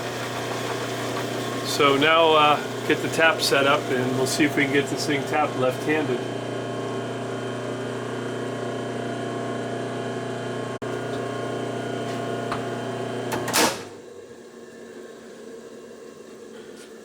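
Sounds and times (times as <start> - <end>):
milling machine running: 0.0 - 15.0
loud clunk: 13.3 - 14.0.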